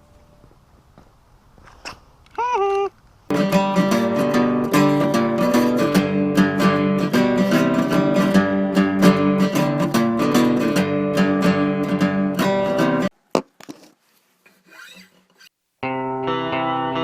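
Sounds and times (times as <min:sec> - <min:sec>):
strummed acoustic guitar chords: 0:03.3 - 0:13.1, 0:15.8 - 0:17.0.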